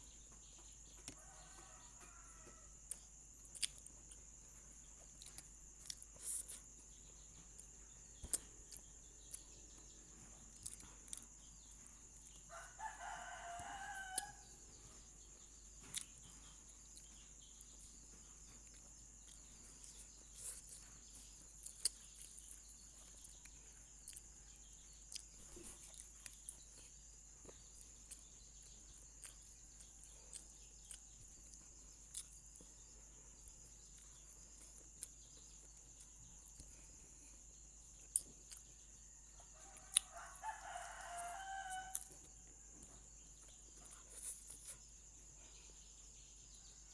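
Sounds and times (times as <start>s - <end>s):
distant rooster crowing: 1.0s - 2.9s, 12.4s - 14.8s, 39.2s - 42.3s.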